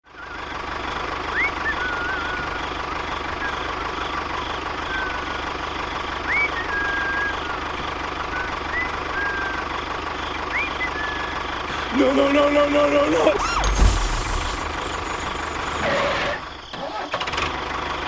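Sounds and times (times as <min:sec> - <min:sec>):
short whistled chirps: 0:00.1 - 0:11.9
small motor whining: 0:13.1 - 0:17.1.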